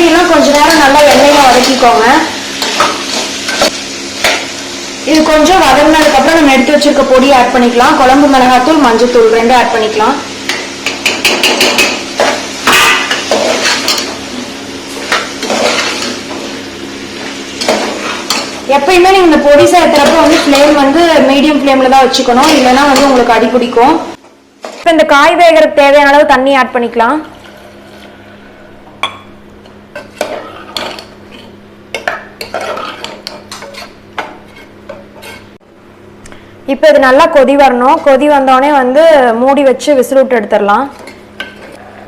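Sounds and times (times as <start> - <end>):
metal spoon scraping a pot: 29.9 - 35.6.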